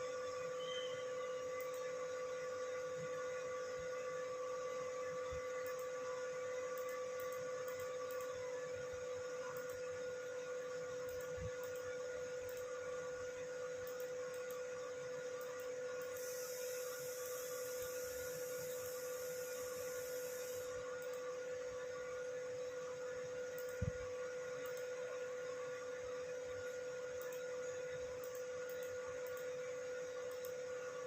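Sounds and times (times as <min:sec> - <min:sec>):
steady hum-like tone: 0:00.0 - 0:31.0
high hiss: 0:16.1 - 0:20.8.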